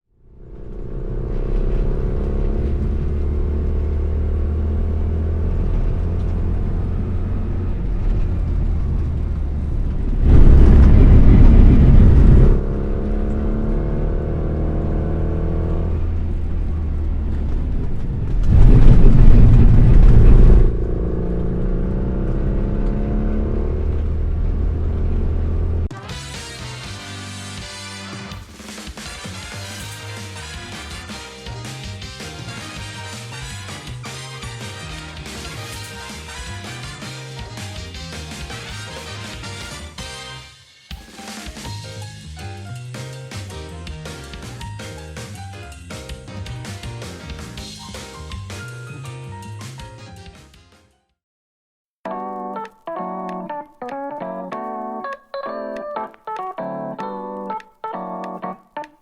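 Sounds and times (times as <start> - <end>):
car engine and road rumble: 0.1 - 25.9
loud rough rush of noise: 0.2 - 25.9.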